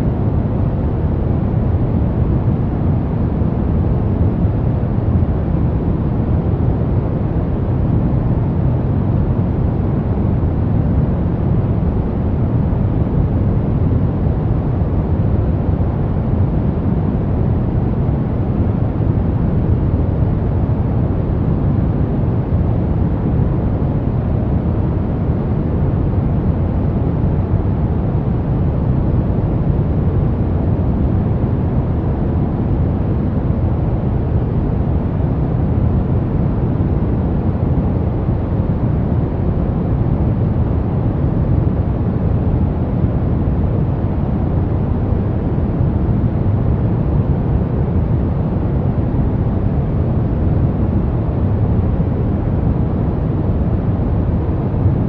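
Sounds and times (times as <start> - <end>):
brown noise hiss: 0.0 - 55.0.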